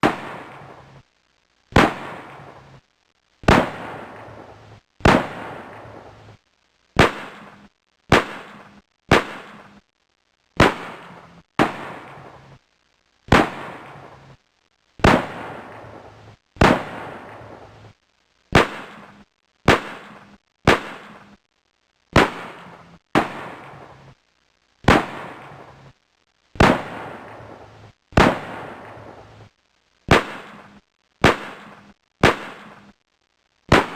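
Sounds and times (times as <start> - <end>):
gunshots with echoing tail: 1.8 - 2.5, 3.5 - 6.1, 7.0 - 9.8, 10.6 - 12.4, 13.3 - 14.1, 15.0 - 17.6, 18.6 - 21.4, 22.2 - 23.9, 24.9 - 25.6, 26.6 - 27.6, 28.2 - 29.2, 30.1 - 32.9.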